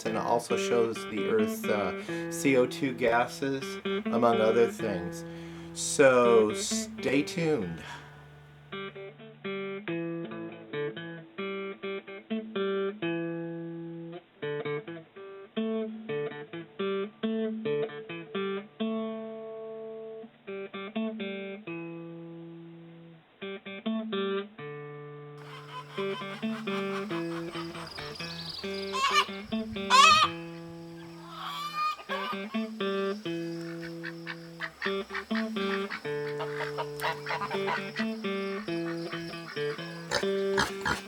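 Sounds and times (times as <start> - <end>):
acoustic guitar plucking: 0.0 - 11.7, 25.4 - 31.3, 31.9 - 41.0.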